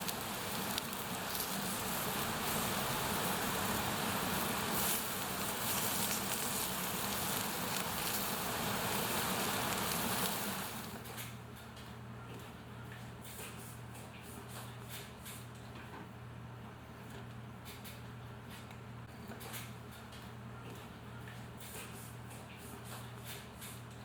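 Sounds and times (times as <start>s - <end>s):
bonfire hissing and crackling: 0.0s - 11.2s.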